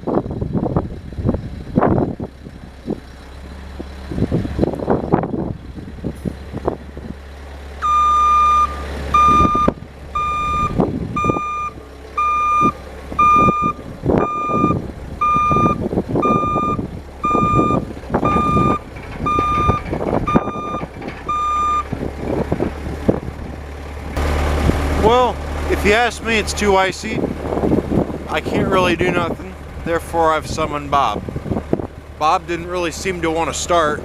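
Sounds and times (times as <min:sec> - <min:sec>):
backup alarm beeping: 0:07.8 - 0:21.9
machine engine running: 0:22.2 - 0:34.0.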